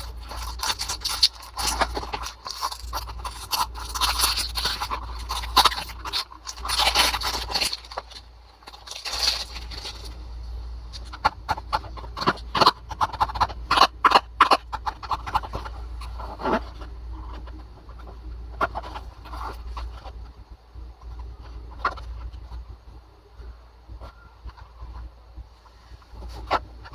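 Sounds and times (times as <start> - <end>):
packaging scraping and rustling: 0.0 - 10.2
steady low hum: 0.0 - 26.9.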